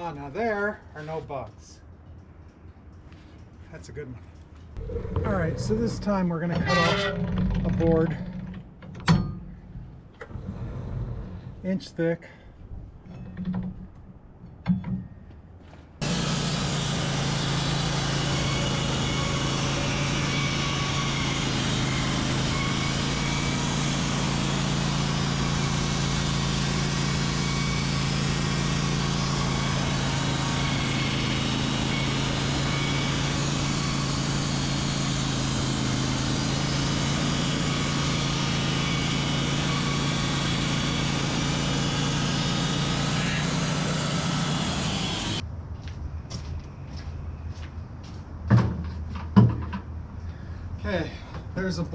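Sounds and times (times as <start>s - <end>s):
bandsaw mill cutting log: 4.8s - 8.6s, 16.0s - 45.4s.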